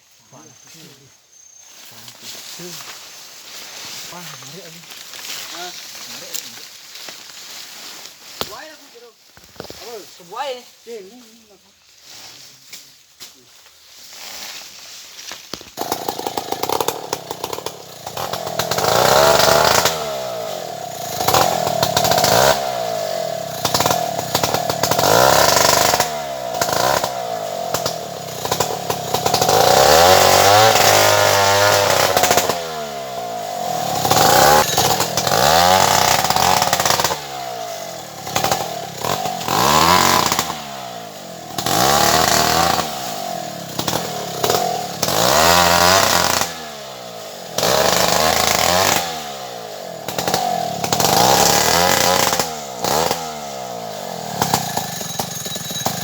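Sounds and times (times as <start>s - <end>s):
two-stroke chainsaw revving: 15.6s - 56.0s.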